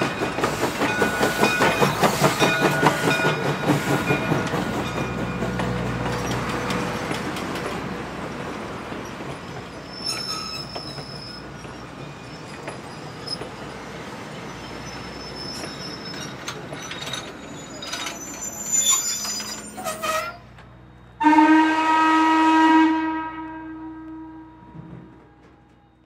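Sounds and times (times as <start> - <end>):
steam train running: 0.0 - 26.0
steam train whistle blast: 21.2 - 24.9.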